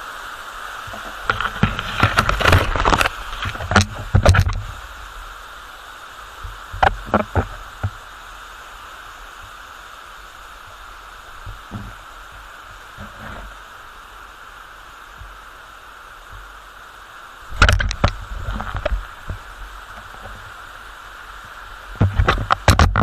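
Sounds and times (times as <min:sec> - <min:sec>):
waterfall rushing: 0:00.0 - 0:23.0
thumps and knocks: 0:00.9 - 0:04.7, 0:17.6 - 0:19.4, 0:22.0 - 0:23.0.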